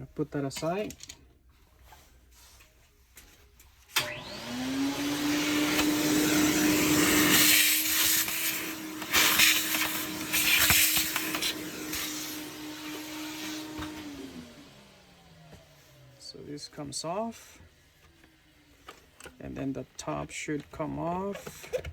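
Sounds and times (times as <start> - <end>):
vacuum cleaner motor humming: 3.9 - 19.4
vacuum cleaner switch click: 4.0 - 4.5.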